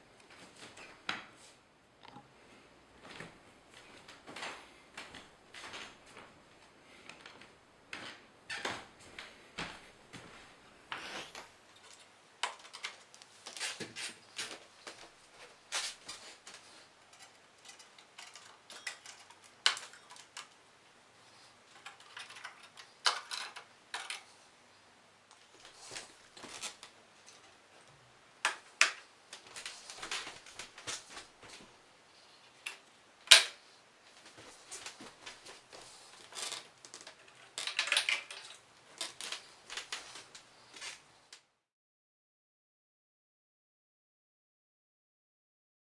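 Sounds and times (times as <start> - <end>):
computer parts clicking and rattling: 15.8 - 20.6, 21.6 - 24.3, 34.3 - 41.0.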